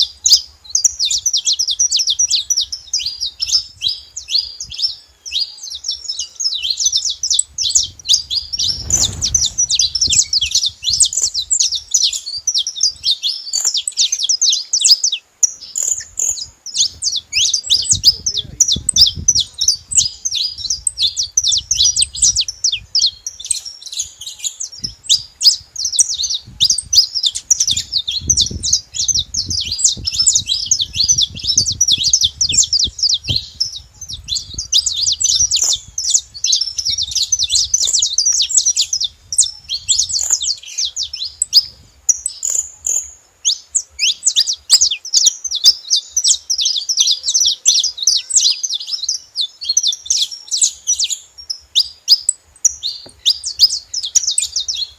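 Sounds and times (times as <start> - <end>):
finch singing high chirps: 0.0 - 54.9.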